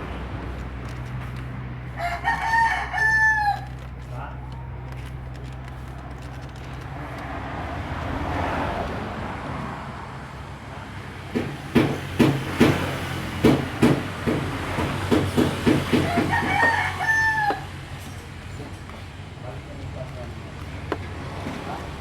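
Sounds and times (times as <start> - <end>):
rooster crowing: 1.9 - 3.8, 15.9 - 18.0
sharp knocks: 11.3 - 16.8.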